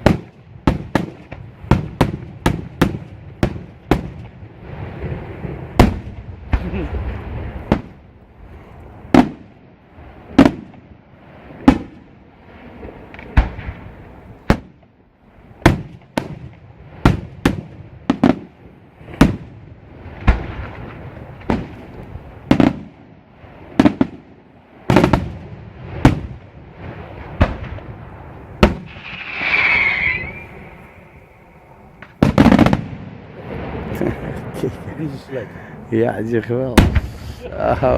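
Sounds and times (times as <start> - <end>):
firework shells bursting: 28.6 - 33.2
high wavering whistle: 29.0 - 31.7.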